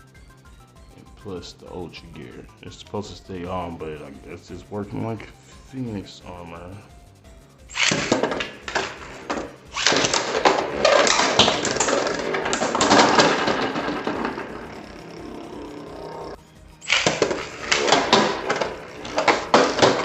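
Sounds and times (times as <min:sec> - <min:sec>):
spinning tops whirring and rattling: 0:07.7 - 0:20.0
tops clacking together: 0:07.7 - 0:20.0.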